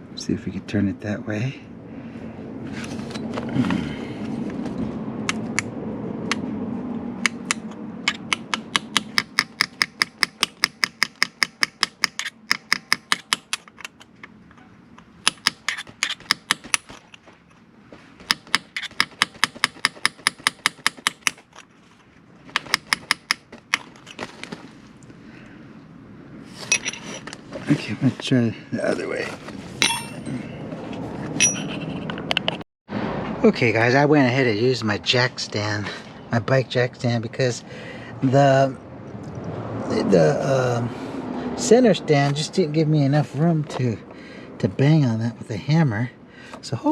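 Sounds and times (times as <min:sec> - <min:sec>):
tool handling and scraping: 0:02.6 - 0:04.9, 0:11.9 - 0:12.4, 0:13.0 - 0:25.1, 0:26.4 - 0:32.6
hammer tapping metal: 0:07.2 - 0:13.6, 0:29.8 - 0:30.3.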